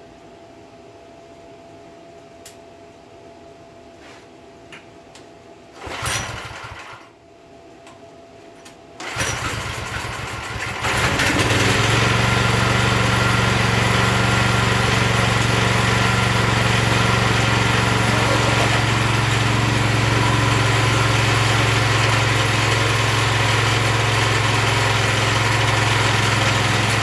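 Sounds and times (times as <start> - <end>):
small gasoline engine pull-starting: 5.8 - 7.0, 9.0 - 27.0.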